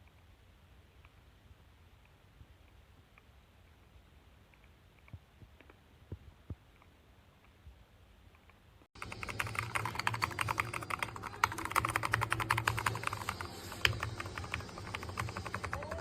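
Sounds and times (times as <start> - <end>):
fast mechanical keyboard typing: 9.0 - 16.0.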